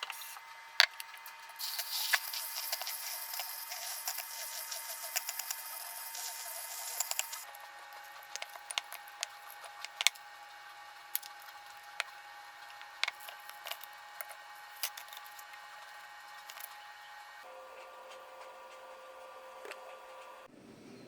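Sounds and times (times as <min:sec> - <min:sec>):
small objects clicking and tapping: 0:00.8 - 0:07.4, 0:08.3 - 0:10.2, 0:12.8 - 0:15.4.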